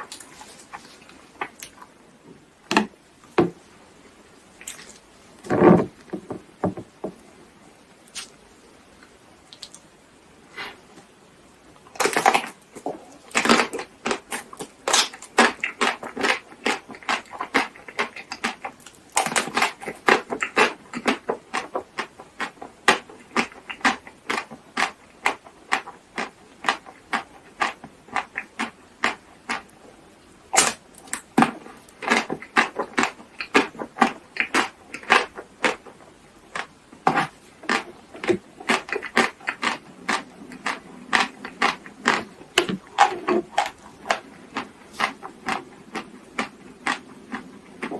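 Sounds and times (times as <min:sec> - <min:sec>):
crisp bites and wet chewing: 0:30.5 - 0:47.9.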